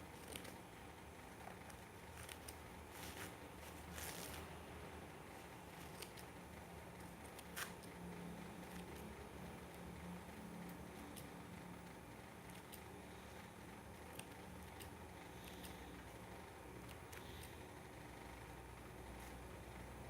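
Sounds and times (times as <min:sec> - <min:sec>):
scissors snipping paper: 0:01.6 - 0:04.5, 0:05.8 - 0:06.3, 0:07.0 - 0:07.9
tissue paper rustling: 0:02.2 - 0:04.5.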